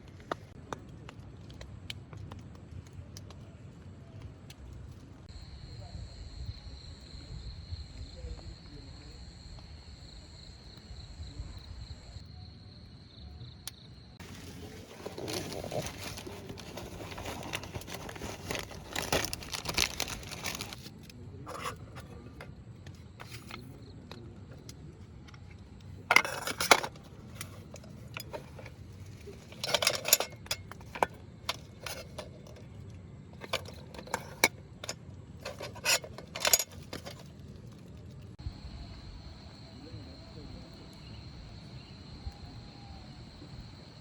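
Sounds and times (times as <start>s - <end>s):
handling rustles and scrapes: 14.2s - 23.9s, 24.5s - 38.4s.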